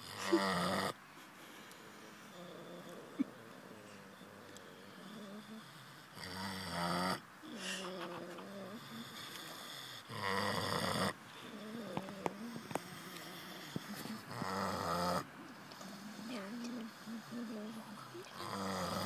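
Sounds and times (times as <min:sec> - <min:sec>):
pig snoring: 0:00.0 - 0:01.0, 0:01.9 - 0:19.0
soft pitched breathing: 0:11.2 - 0:14.4.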